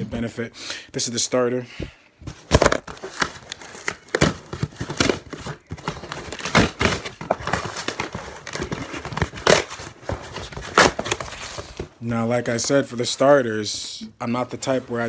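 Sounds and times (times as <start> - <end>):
packaging crinkling and rustling: 2.3 - 12.0.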